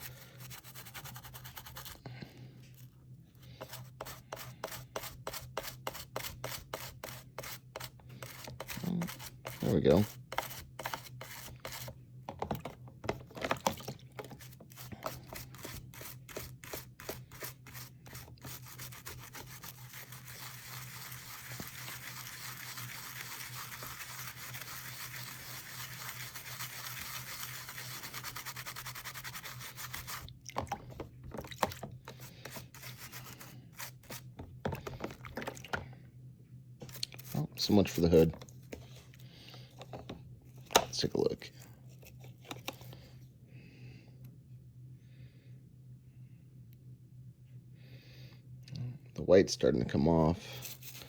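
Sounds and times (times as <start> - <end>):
brush scrubbing plastic: 0.0 - 2.0, 2.7 - 12.0, 13.5 - 35.2, 36.9 - 39.0, 50.4 - 51.0.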